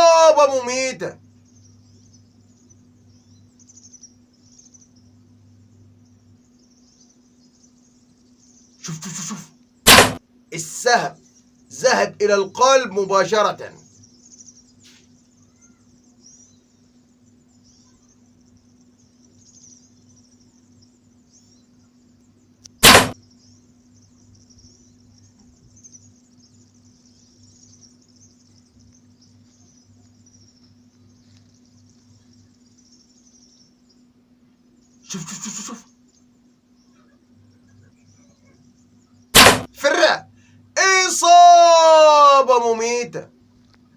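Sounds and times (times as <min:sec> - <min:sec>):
insects chirping: 0:00.0 - 0:43.3
sharp bow shot: 0:09.9 - 0:10.2, 0:22.8 - 0:23.2, 0:39.4 - 0:39.7.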